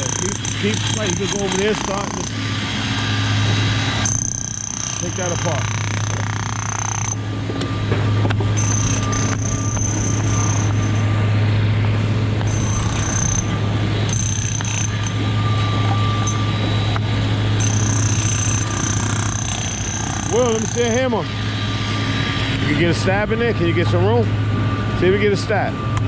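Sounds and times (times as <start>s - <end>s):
low machine hum: 0.0s - 26.0s.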